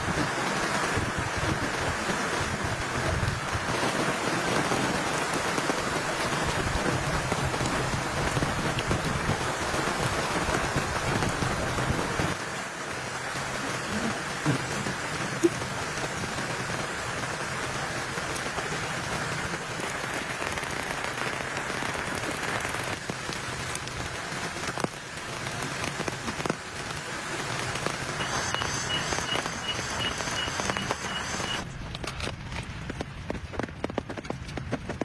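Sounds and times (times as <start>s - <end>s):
rain falling: 0.0s - 35.0s
short high peeps: 28.2s - 31.6s.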